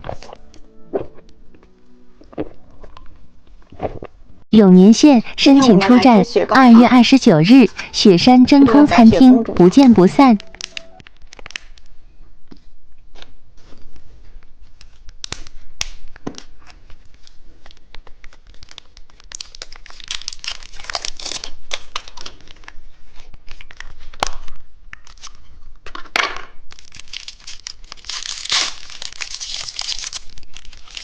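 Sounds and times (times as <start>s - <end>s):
plastic wrapper crinkling: 10.4s - 11.9s, 14.8s - 25.6s, 26.6s - 31.0s.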